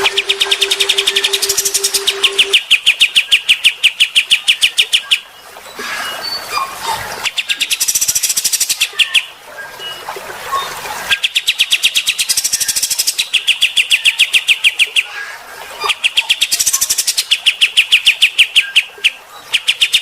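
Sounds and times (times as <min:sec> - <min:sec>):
songbird rattling trills: 0:00.0 - 0:02.9
scattered bird chirps and twitters: 0:00.0 - 0:15.2.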